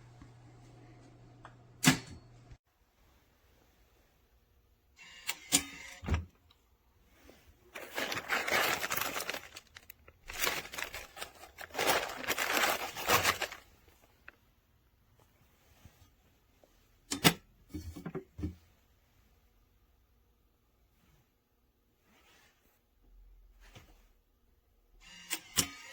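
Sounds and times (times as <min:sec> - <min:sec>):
rustling and scraping: 0:07.0 - 0:14.4.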